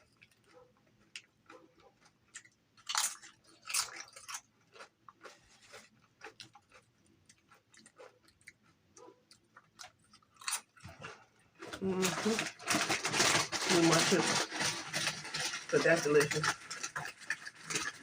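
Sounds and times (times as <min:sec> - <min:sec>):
crunching fried chicken: 0:00.0 - 0:18.0.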